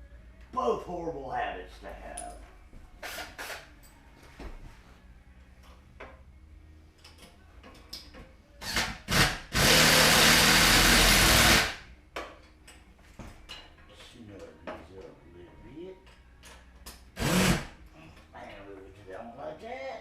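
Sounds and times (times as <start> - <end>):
clicks and knocks of parts handled: 7.0 - 8.3
handheld power tool running: 8.7 - 11.8, 17.2 - 17.7.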